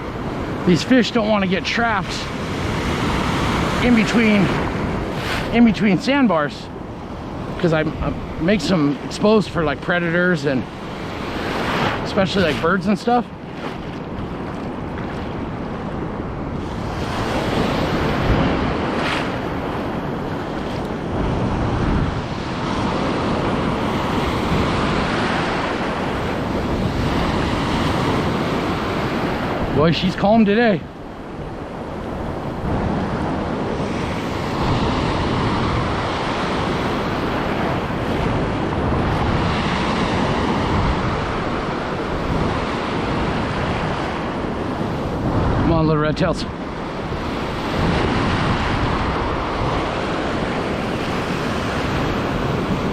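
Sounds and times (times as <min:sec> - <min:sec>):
wind buffeting microphone: 0:00.0 - 0:52.9
surf breaking: 0:00.3 - 0:30.7.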